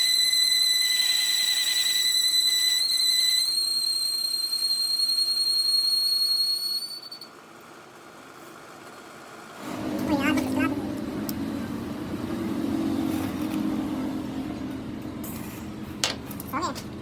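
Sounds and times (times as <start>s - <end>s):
high-pitched whistling whine: 0.0s - 7.4s.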